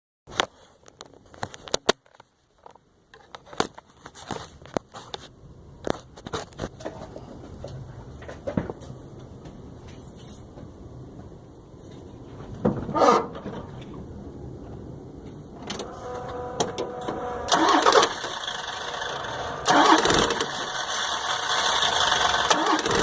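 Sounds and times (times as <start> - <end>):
diesel engine rumbling: 8.8 - 23.0.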